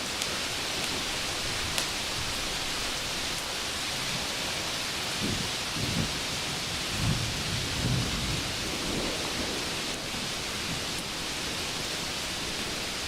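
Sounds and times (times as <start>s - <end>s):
rain hissing: 0.0s - 13.0s
thunder rumbling: 6.9s - 11.7s.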